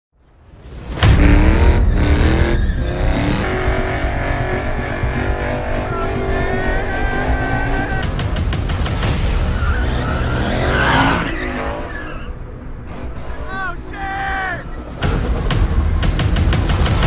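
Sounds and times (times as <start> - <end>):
car engine revving hard: 0.9 - 17.0
tyre squeal: 1.2 - 8.4, 9.0 - 15.2.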